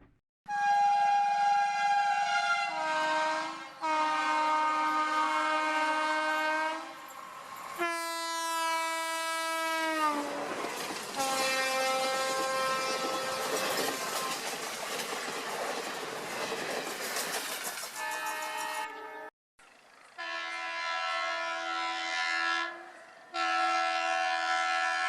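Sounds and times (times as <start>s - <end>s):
train horn blasts: 0.5s - 7.1s, 7.8s - 10.5s, 11.2s - 14.3s, 18.0s - 19.3s, 20.1s - 25.0s
train wheels rumbling and clattering: 10.2s - 18.9s.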